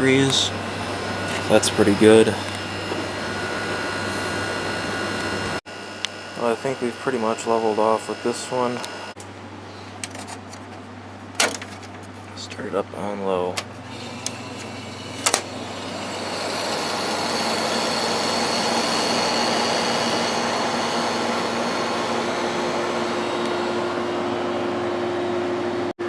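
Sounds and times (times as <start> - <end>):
steady tone: 0.0 - 5.6, 13.9 - 25.9
air conditioner humming: 0.0 - 25.9.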